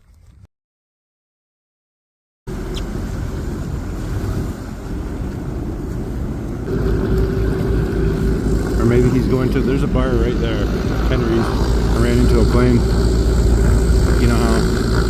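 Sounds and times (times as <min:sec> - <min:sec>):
personal watercraft engine drone: 0:02.5 - 0:15.0
wind on microphone: 0:02.5 - 0:15.0.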